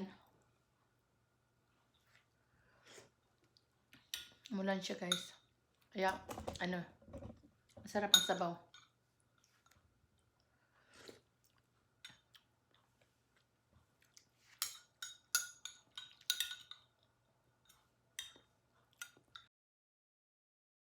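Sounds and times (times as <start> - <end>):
spoon clinking against bowl: 5.1 - 5.4, 8.1 - 8.9, 14.6 - 16.8.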